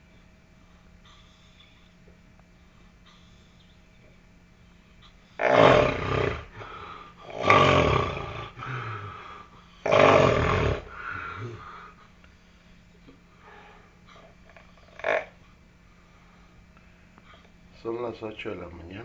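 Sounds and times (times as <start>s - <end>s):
man snoring heavily: 5.4s - 9.2s, 9.8s - 11.6s.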